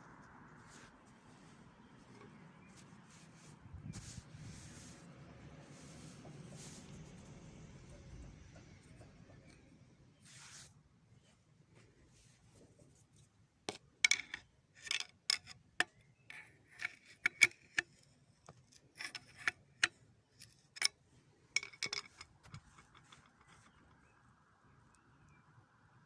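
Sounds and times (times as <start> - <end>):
short scrapes: 0.4 - 7.3.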